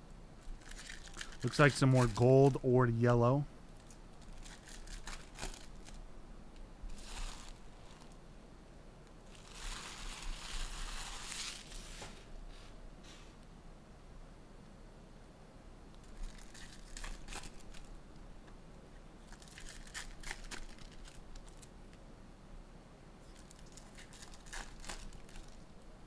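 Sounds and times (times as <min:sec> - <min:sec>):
card wrappers tearing and crinkling: 0:00.4 - 0:02.6, 0:04.2 - 0:06.0, 0:06.9 - 0:08.1, 0:09.3 - 0:12.0, 0:16.1 - 0:17.9, 0:19.3 - 0:21.7, 0:23.3 - 0:25.6.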